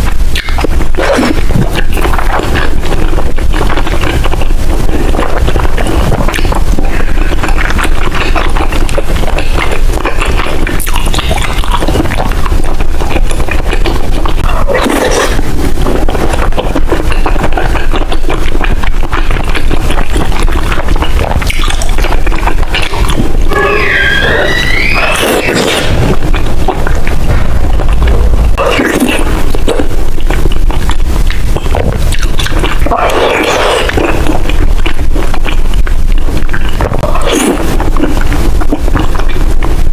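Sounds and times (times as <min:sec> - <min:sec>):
wet mouth sounds: 0:00.0 - 0:39.9
close chewing clicks and smacks: 0:00.1 - 0:14.4, 0:15.8 - 0:23.4, 0:29.1 - 0:33.2, 0:33.9 - 0:39.8.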